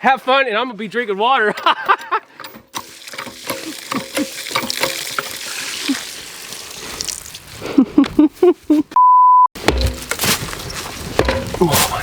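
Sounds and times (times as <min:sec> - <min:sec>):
running water hissing: 0:02.8 - 0:07.5
censor bleep: 0:09.0 - 0:09.5.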